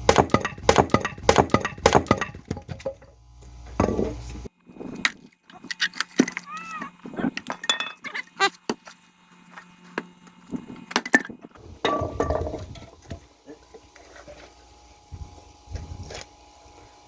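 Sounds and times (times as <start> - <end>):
axe splitting firewood: 0.0 - 3.1.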